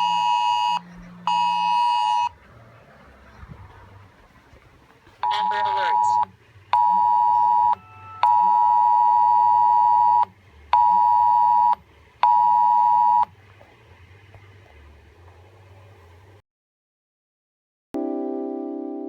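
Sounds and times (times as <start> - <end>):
phone emergency alert tone: 0.0 - 2.3, 5.2 - 13.3.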